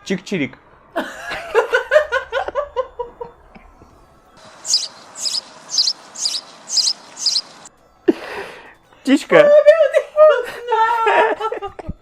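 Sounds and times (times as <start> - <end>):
high sharp bird chirps: 4.4 - 7.7.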